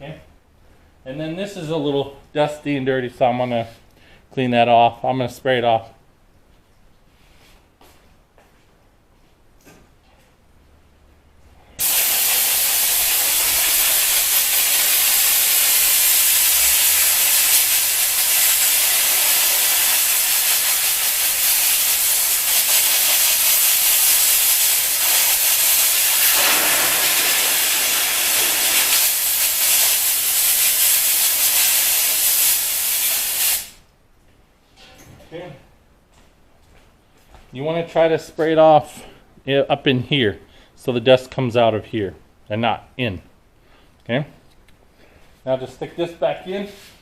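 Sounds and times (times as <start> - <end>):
compressed air hissing: 11.8 - 33.8.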